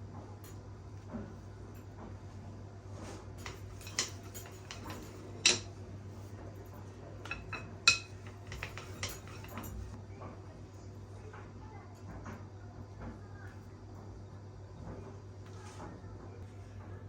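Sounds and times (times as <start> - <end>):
dishes and cutlery clinking: 3.0 - 10.0.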